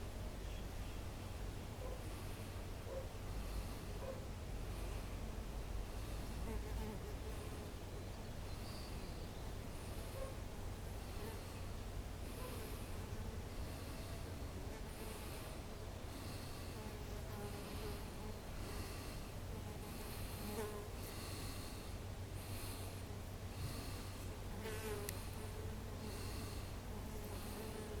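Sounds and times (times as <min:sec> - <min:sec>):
bees buzzing: 0:16.1 - 0:28.0.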